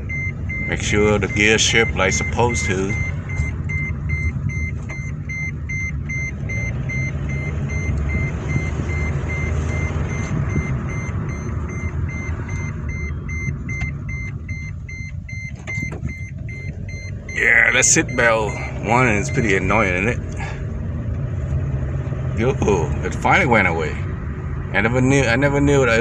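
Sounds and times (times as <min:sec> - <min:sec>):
seat belt warning chime beeping: 0:00.0 - 0:20.4
low rumble of car driving: 0:00.0 - 0:26.0.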